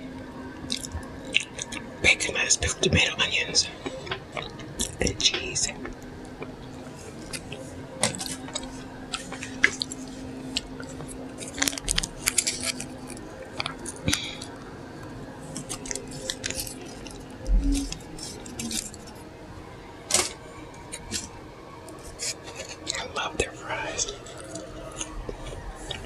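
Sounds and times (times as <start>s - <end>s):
wrapper crinkling and rustling: 7.1s - 14.5s, 15.5s - 19.2s.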